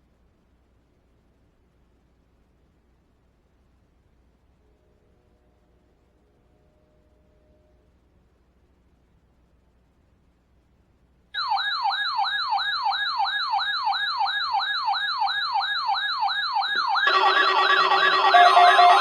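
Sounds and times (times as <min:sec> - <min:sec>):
electronic siren yelping: 0:11.4 - 0:19.0
steady tones: 0:16.8 - 0:19.0.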